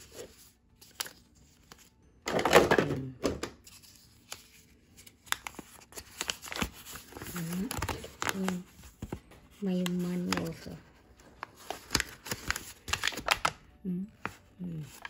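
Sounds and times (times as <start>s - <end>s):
packaging rustle: 3.6s - 13.6s.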